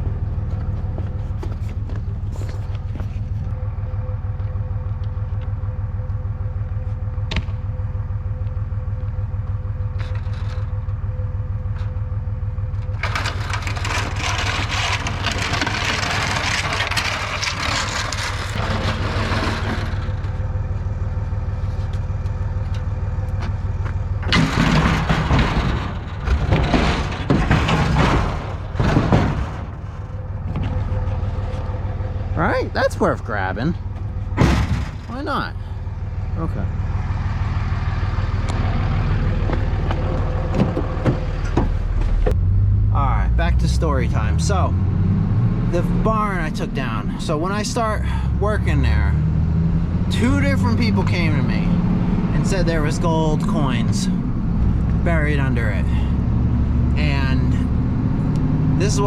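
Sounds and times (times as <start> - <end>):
loud clunks and knocks: 24.2 - 31.1, 33.9 - 35.2, 39.4 - 42.4.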